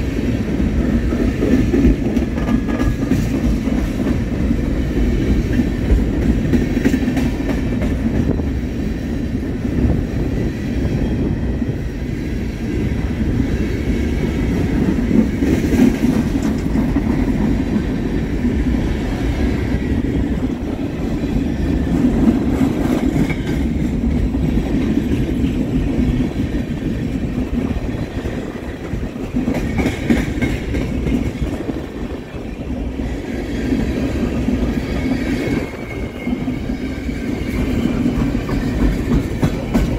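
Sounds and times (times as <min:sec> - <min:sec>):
train wheels rumbling on rail: 0:00.0 - 0:39.9
wheels clacking over rail joints: 0:14.5 - 0:19.3, 0:20.1 - 0:39.9
faint high squeal: 0:34.8 - 0:37.9.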